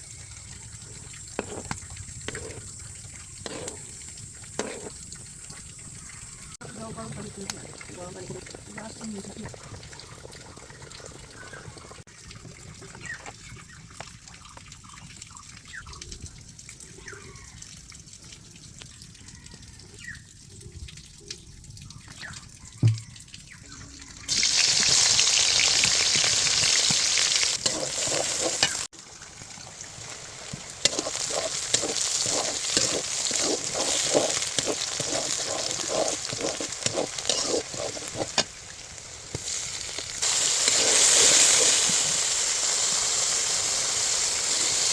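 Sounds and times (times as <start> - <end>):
food frying in oil: 0.0 - 44.9
scraping stirring strokes: 0.6 - 5.8, 24.6 - 28.9, 30.5 - 42.6.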